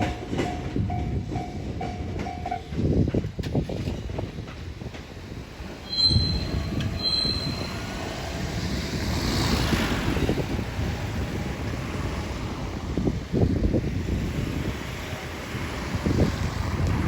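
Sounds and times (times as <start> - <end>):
train rumbling: 0.0 - 17.0
high-pitched wheel squeals: 5.8 - 8.1.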